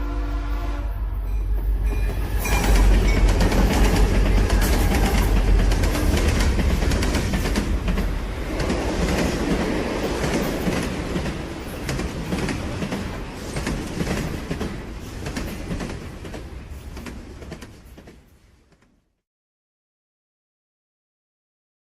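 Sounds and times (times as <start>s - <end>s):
rapid clacks and rattles: 2.6s - 16.4s.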